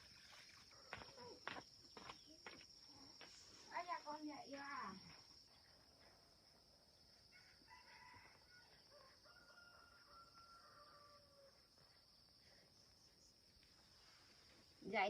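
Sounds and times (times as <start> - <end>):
rooster crowing: 7.3 - 11.6.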